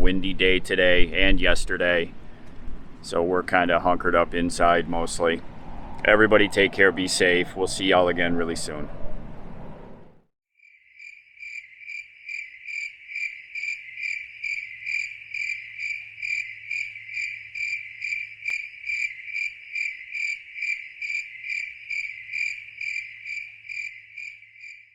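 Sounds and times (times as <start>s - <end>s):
cricket chirping: 10.6s - 24.9s.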